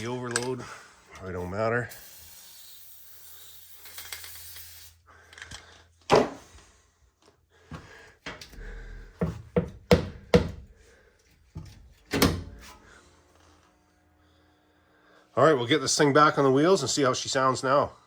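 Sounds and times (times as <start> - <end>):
aerosol spray can hissing: 1.9 - 5.0
sharp knocks and clunks: 9.1 - 10.7.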